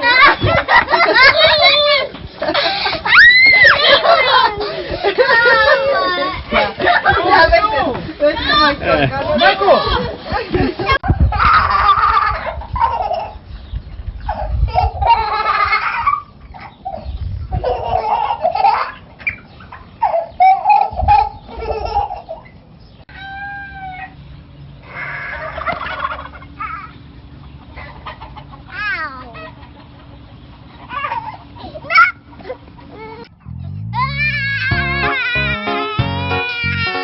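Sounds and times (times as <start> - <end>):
pitched cries: 0.0 - 10.0, 20.0 - 22.4, 23.1 - 27.0, 30.8 - 37.0
chickens squawking and clucking: 0.0 - 37.0.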